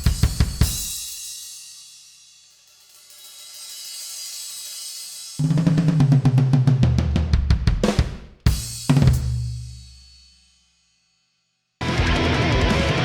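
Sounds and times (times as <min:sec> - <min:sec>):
drum fill on toms and kick: 0:00.0 - 0:01.6, 0:05.4 - 0:10.3
cymbal ringing: 0:00.0 - 0:05.4.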